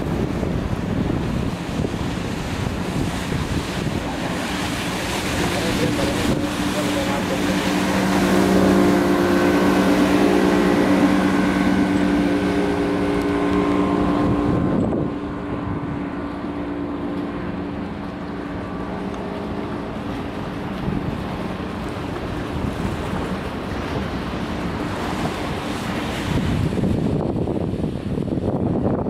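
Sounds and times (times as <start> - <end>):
motorboat engine running: 0.0 - 29.0
water rushing: 0.0 - 29.0
wind: 0.0 - 29.0.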